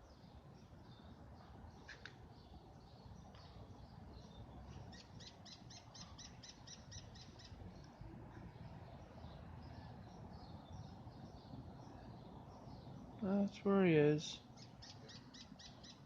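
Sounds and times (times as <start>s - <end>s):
faint bird calls: 4.7s - 13.2s, 14.6s - 16.0s.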